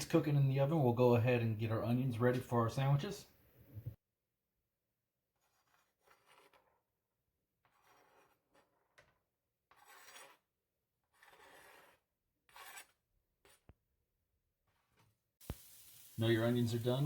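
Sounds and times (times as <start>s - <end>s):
knife scraping onion: 5.3s - 7.0s, 7.6s - 13.7s.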